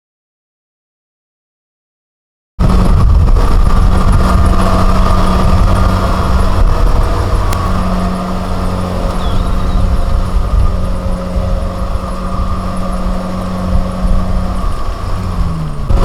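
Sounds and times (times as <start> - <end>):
diesel engine droning: 2.6 - 16.0.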